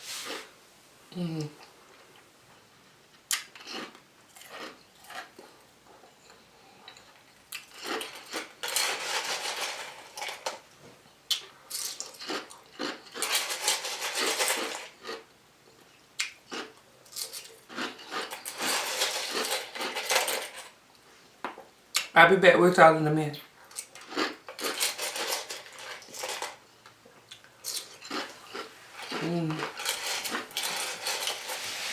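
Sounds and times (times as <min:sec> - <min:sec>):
ice crunching and chewing: 0:03.3 - 0:05.6, 0:06.2 - 0:10.5, 0:11.3 - 0:15.2, 0:16.2 - 0:20.5, 0:23.7 - 0:26.6, 0:27.3 - 0:31.5
spoon scraping in cup of ice: 0:13.1 - 0:15.0, 0:17.3 - 0:20.7, 0:24.0 - 0:26.6, 0:27.7 - 0:31.9.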